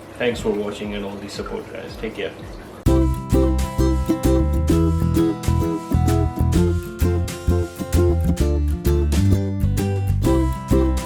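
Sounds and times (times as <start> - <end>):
upbeat plucked guitar music: 2.8 - 11.0.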